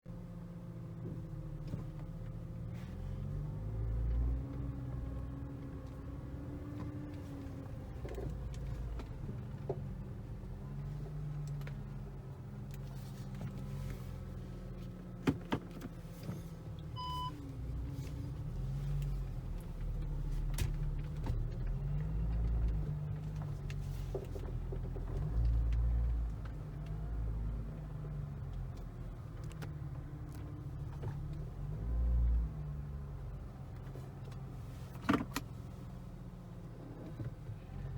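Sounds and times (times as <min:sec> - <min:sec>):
car driving with low hum: 0:00.1 - 0:37.9
brief electronic beep: 0:17.0 - 0:17.4.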